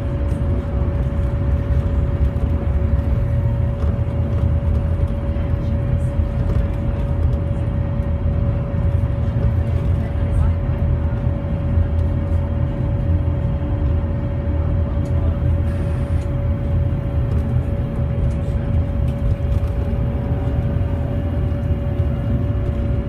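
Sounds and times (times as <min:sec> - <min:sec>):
bus engine rumbling: 0:00.0 - 0:23.0
steady high whine: 0:10.3 - 0:23.0.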